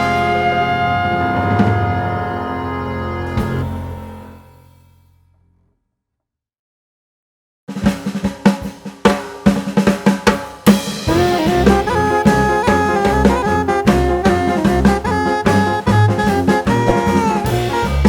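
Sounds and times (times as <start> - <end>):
full band playing: 0.0 - 4.4, 10.6 - 18.0
drum kit snare and bass drum: 7.7 - 18.0.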